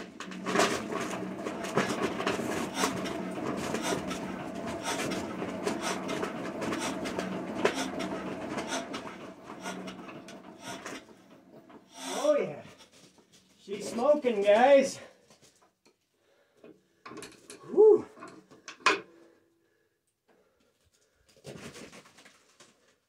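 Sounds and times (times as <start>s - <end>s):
diesel engine clattering: 1.1s - 12.0s.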